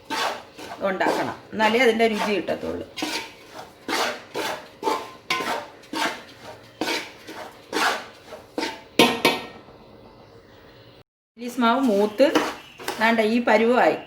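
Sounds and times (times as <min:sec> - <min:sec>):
utensil scraping a pan: 0:00.0 - 0:09.0, 0:11.7 - 0:13.4.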